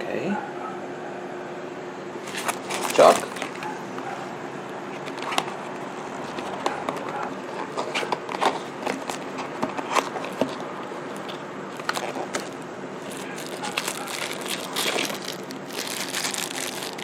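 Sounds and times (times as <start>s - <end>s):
steady low hum: 0.0s - 17.0s
packaging crackling and rustling: 2.2s - 3.8s, 4.9s - 17.0s.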